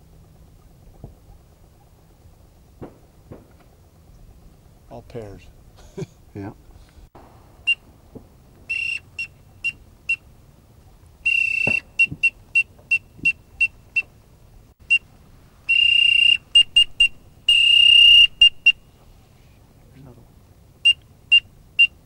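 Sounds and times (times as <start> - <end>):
duck call whistle: 8.7 - 10.2, 11.2 - 14.0, 15.7 - 18.8.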